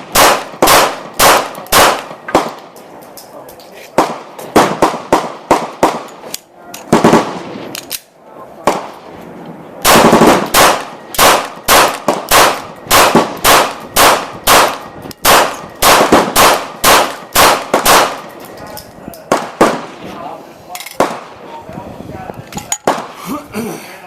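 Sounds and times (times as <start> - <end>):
pistol shots: 0.0 - 2.7, 4.0 - 6.3, 6.9 - 7.7, 9.8 - 18.4, 19.3 - 20.0, 21.0 - 21.4, 22.8 - 23.2.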